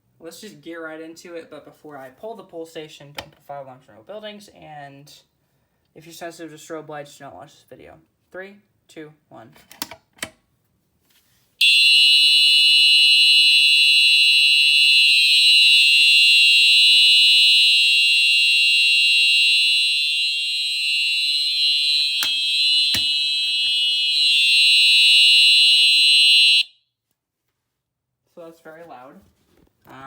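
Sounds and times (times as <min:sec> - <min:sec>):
fire alarm horn: 0:11.6 - 0:26.8
sharp clicks: 0:21.9 - 0:23.8.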